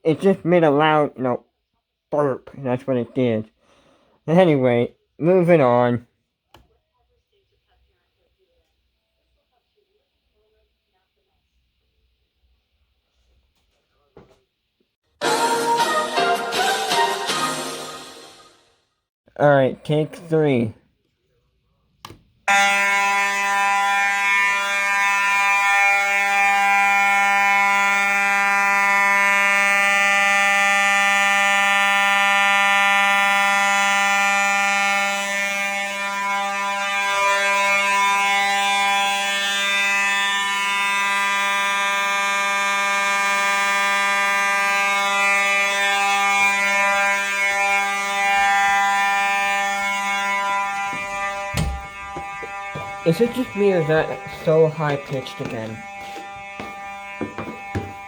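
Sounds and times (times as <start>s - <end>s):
fire alarm horn buzzing: 2.2s - 6.2s, 22.4s - 58.0s.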